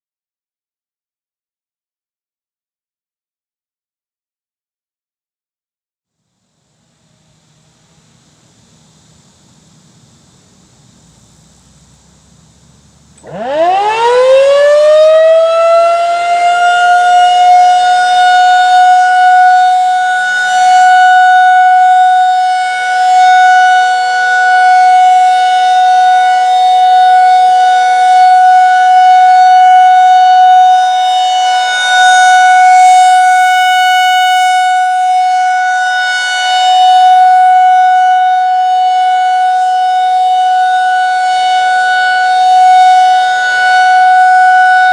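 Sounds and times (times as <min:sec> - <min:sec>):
tornado siren wailing: 0:11.9 - 0:44.9.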